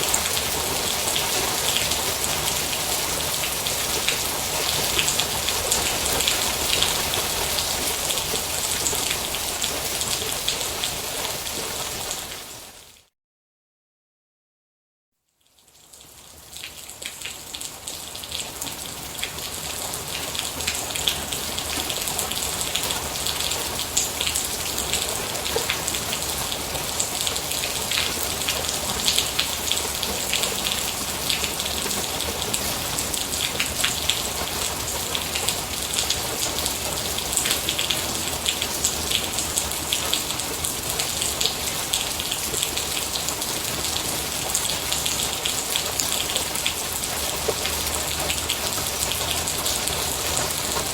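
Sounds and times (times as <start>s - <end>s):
rain with sharp drop hits: 0.0s - 12.9s, 15.9s - 50.9s.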